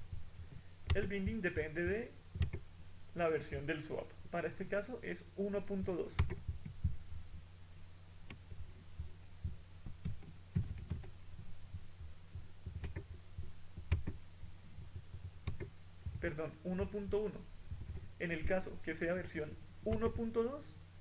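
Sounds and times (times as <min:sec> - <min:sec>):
low thumps: 0:00.0 - 0:01.7, 0:06.2 - 0:07.5, 0:08.3 - 0:18.8
low electrical hum: 0:00.0 - 0:21.0
mouse and keyboard clicks: 0:02.4 - 0:02.6, 0:06.2 - 0:06.8, 0:09.9 - 0:11.2, 0:12.6 - 0:13.2, 0:13.8 - 0:14.2, 0:14.8 - 0:15.7.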